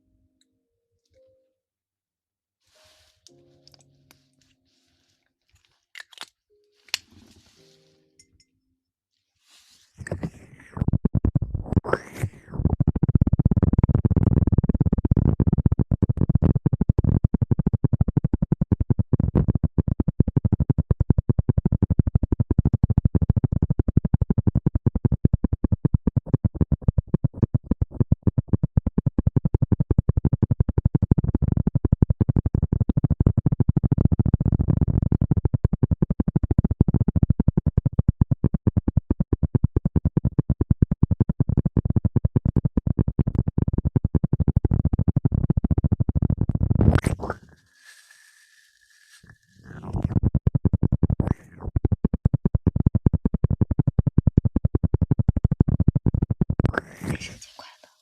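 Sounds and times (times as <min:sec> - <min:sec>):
scratching on microphone: 0:09.4 - 0:18.2, 0:40.2 - 0:53.7, 0:54.5 - 0:58.0.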